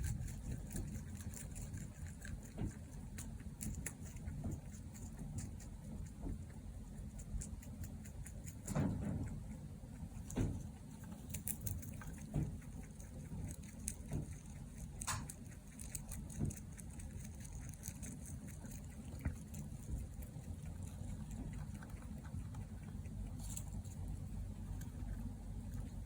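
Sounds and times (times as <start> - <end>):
rabbit snoring softly: 0.0 - 26.0.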